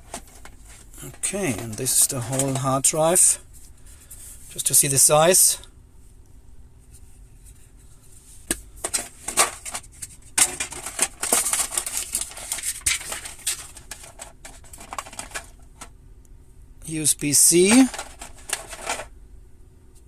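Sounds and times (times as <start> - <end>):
faint steady hum: 0.0 - 20.0
packaging rustling and crinkling: 8.8 - 15.9, 17.6 - 19.1.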